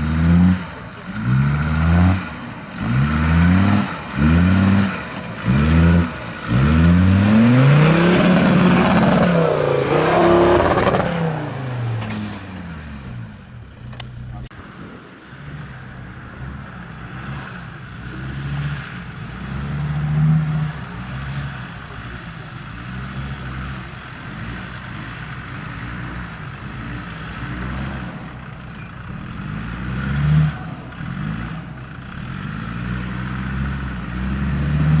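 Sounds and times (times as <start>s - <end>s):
off-road engine revving: 0.0s - 35.0s.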